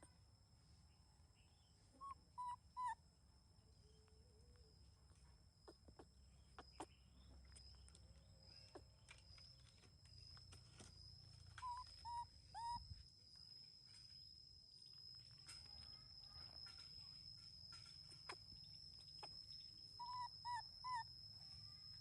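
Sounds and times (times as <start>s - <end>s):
faint high-pitched whine: 0.0s - 22.0s
chirping animal calls: 2.0s - 3.0s, 5.7s - 7.1s, 11.6s - 12.9s, 20.0s - 21.1s.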